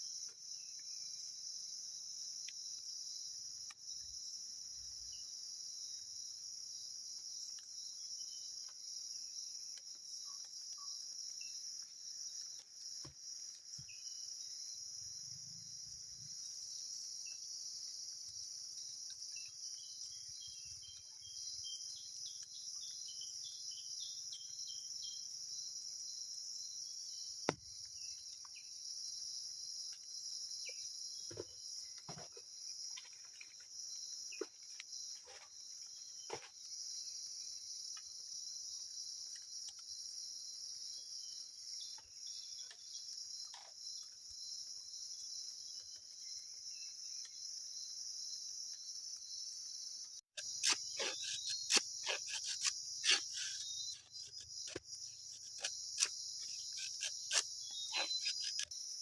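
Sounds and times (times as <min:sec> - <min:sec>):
insects trilling: 0:00.0 - 0:59.0.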